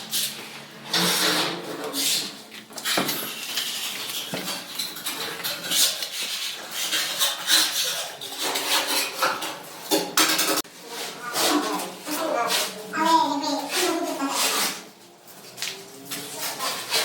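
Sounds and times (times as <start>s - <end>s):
hard objects clinking and clattering: 2.4s - 10.7s.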